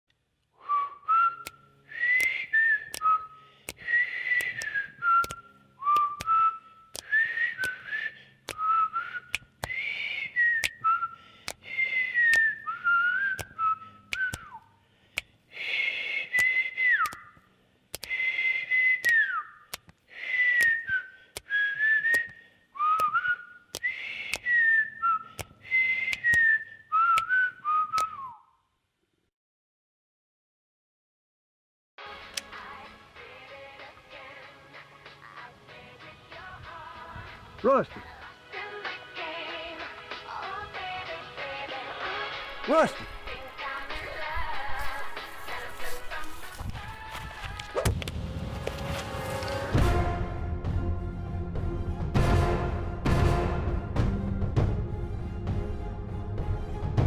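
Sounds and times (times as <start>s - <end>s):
person whistling a tune: 0.6s - 14.7s, 15.8s - 17.4s, 18.0s - 28.6s.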